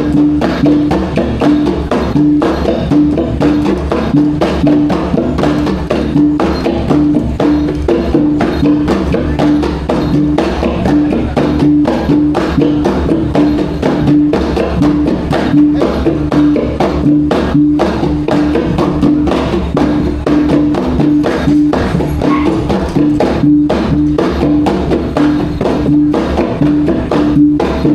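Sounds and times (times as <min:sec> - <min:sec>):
rapid drum strokes: 0:00.0 - 0:27.9.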